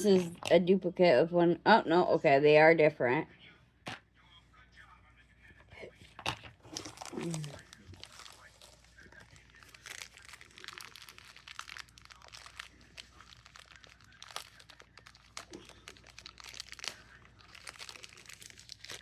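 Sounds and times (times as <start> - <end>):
plastic bag crinkling: 6.6 - 19.0.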